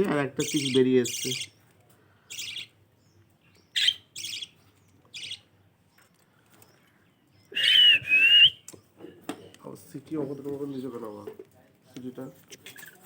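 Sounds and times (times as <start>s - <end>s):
budgerigars chirping: 0.2s - 1.6s, 2.3s - 5.5s
whistle-like bird call: 7.5s - 8.7s.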